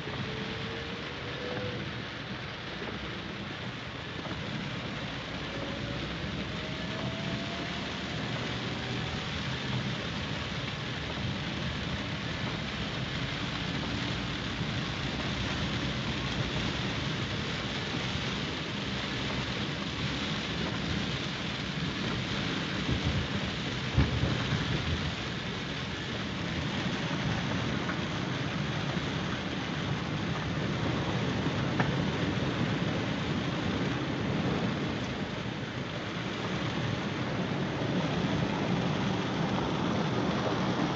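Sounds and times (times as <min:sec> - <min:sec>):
waterfall roaring: 0:00.0 - 0:14.4, 0:30.0 - 0:40.9.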